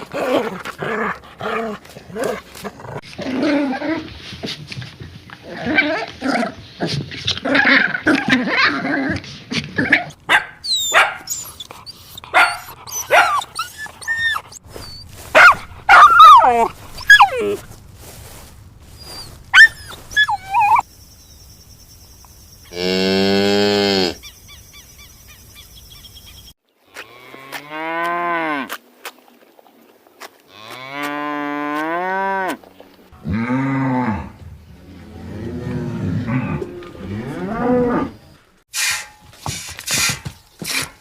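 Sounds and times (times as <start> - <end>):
cattle mooing: 33.2 - 38.2.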